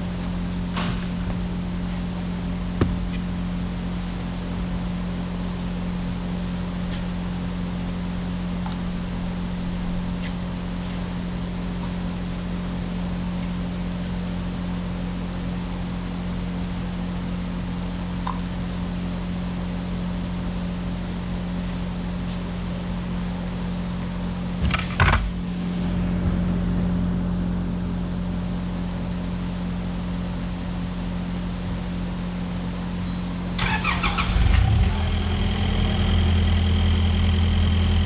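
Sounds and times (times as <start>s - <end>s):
excavator diesel engine running: 33.6s - 38.0s.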